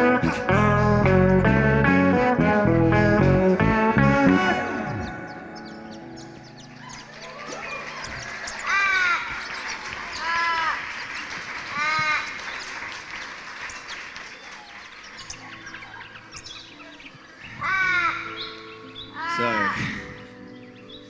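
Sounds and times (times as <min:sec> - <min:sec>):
band playing low held notes: 0:00.0 - 0:08.7
crow cawing: 0:04.4 - 0:12.6, 0:17.4 - 0:20.2.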